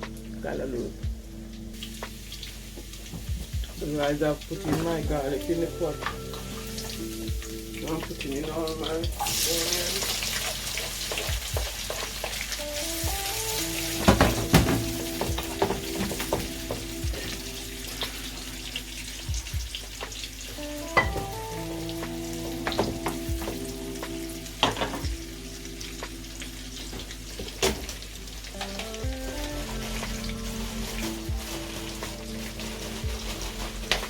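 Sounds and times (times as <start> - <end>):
onions sizzling in oil: 0.0 - 34.0
soft background music: 0.0 - 34.0
spoon knocking against pot: 21.0 - 21.4.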